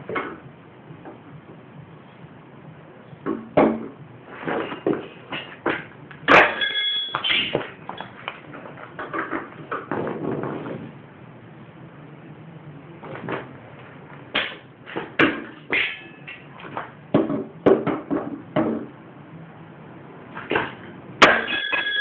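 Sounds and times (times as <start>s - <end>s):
short metallic rings: 6.3s - 7.5s, 21.4s - 22.0s
hand tools clanking on metal: 6.3s - 8.1s.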